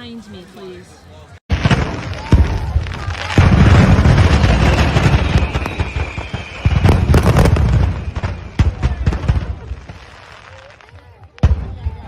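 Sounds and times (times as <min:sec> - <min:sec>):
fireworks cracking and banging: 0:01.5 - 0:12.0
firework whistle: 0:04.2 - 0:08.8.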